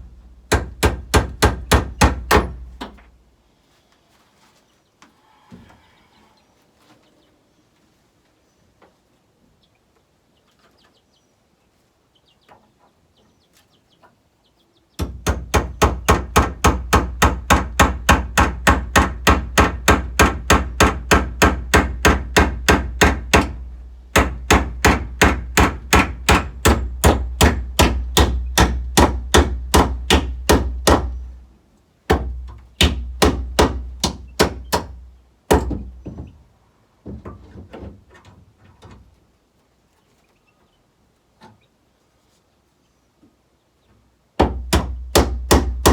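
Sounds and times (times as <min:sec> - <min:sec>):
hammer driving nails into wood: 0:00.5 - 0:03.0, 0:15.0 - 0:31.2, 0:32.1 - 0:36.2, 0:44.4 - 0:45.9.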